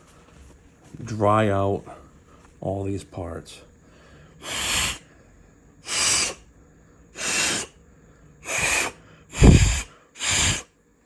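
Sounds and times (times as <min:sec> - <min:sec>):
short blasts of air: 0:04.4 - 0:05.0, 0:05.8 - 0:06.4, 0:07.2 - 0:07.7, 0:08.4 - 0:10.7.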